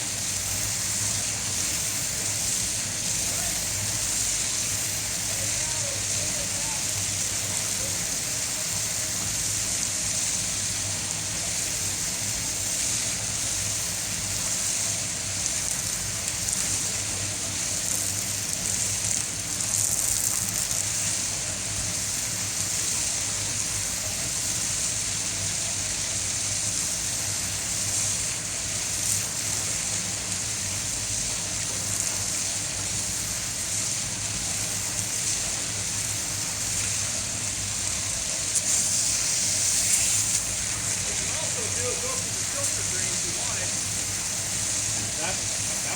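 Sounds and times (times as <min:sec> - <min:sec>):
water rushing in tank: 0:00.0 - 0:45.9.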